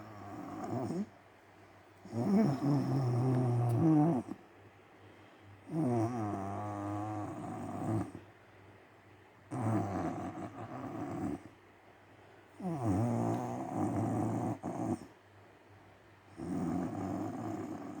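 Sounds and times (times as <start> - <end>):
quiet breaths: 0.0 - 15.2, 16.2 - 18.0
woman snoring: 2.1 - 4.2, 12.6 - 15.0.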